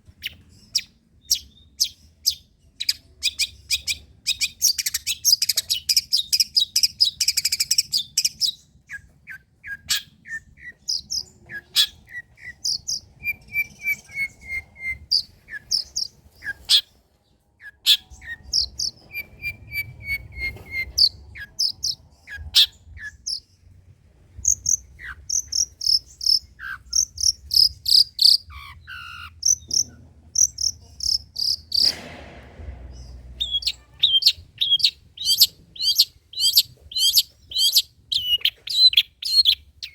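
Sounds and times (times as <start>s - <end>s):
bird singing chirps and trills: 0.2s - 17.0s, 17.6s - 23.8s, 24.4s - 31.8s, 33.4s - 39.9s
harsh rasping bird note: 30.5s - 36.0s.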